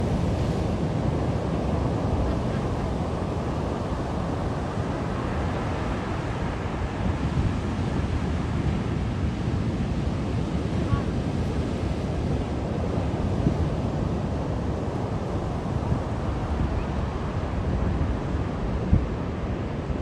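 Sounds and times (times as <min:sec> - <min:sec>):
ocean surf washing onto beach: 0:00.0 - 0:20.0.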